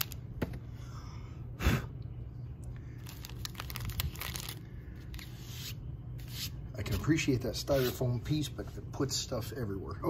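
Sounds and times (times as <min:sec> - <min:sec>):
cardboard packaging tearing: 0:03.0 - 0:04.6
packaging clicks and rustling: 0:03.0 - 0:04.6.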